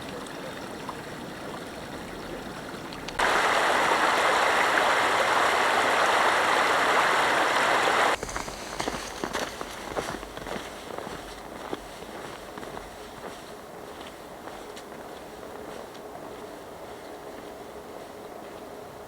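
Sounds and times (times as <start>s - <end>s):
creek water rushing: 0.0s - 12.6s.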